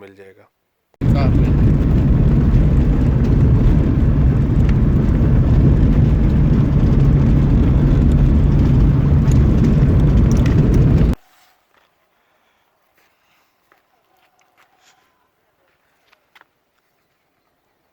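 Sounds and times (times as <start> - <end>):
moving vehicle rumble: 1.0 - 11.2.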